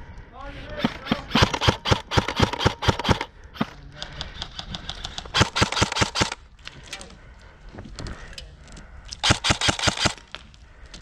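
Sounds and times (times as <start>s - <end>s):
airsoft guns firing bursts: 0.8s - 3.7s, 4.3s - 6.4s, 9.2s - 10.3s.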